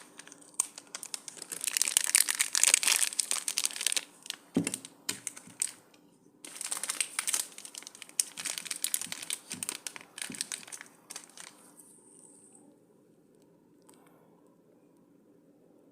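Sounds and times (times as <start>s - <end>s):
sweet wrappers crinkling: 0.0s - 11.9s.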